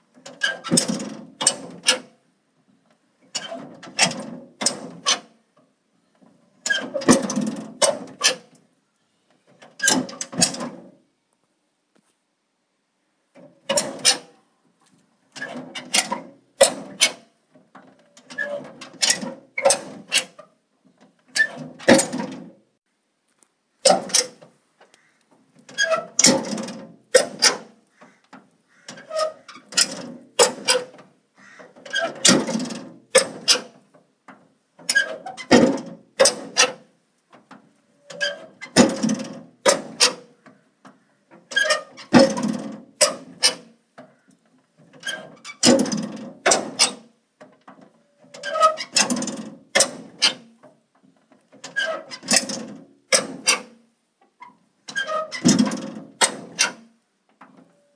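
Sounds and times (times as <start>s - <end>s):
metal door and latch clanking: 0.2s - 2.1s, 3.3s - 5.3s, 6.2s - 8.6s, 9.5s - 10.9s, 13.4s - 14.4s, 15.4s - 22.6s, 23.8s - 24.5s, 25.6s - 44.1s, 44.8s - 53.8s, 54.9s - 57.9s
metal door squeaking and scraping: 0.2s - 2.2s, 3.3s - 5.3s, 6.2s - 8.6s, 9.4s - 11.0s, 13.4s - 14.4s, 15.3s - 17.3s, 17.9s - 20.6s, 21.2s - 22.6s, 23.8s - 24.5s, 25.6s - 33.9s, 34.8s - 36.9s, 37.6s - 47.2s, 47.8s - 50.6s, 51.5s - 53.8s, 54.4s - 57.0s.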